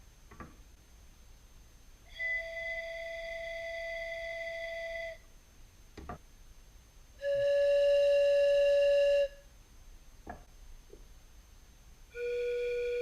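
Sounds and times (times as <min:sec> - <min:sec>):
steam whistle blasts: 0:02.1 - 0:05.2, 0:07.2 - 0:09.4, 0:12.1 - 0:13.0.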